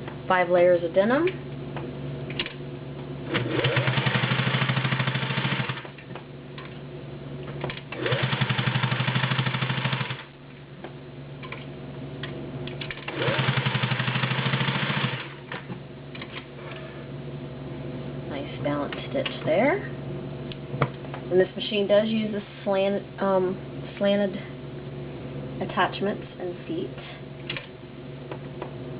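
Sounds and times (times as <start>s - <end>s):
sewing machine stitching: 3.3s - 6.0s, 7.7s - 10.3s, 12.8s - 15.7s.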